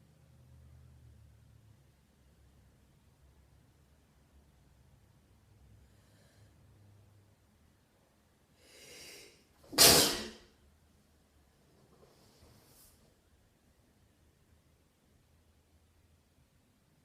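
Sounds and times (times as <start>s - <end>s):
drawn-in breath: 8.6s - 9.5s
loud sneeze: 9.1s - 10.4s.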